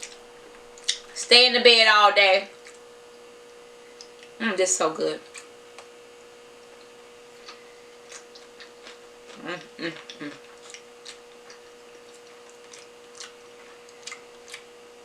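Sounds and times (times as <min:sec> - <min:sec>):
faint steady hum: 0:00.0 - 0:15.0
mouth chewing sounds: 0:06.6 - 0:14.8
voiced murmur: 0:09.4 - 0:10.4.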